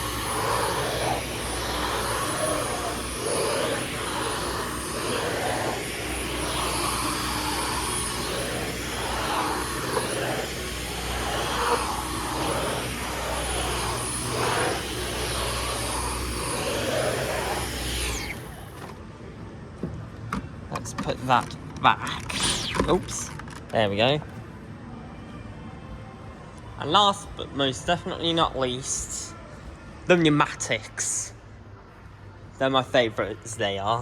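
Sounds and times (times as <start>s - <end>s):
vacuum cleaner whine: 0.0s - 19.0s, 22.3s - 23.3s.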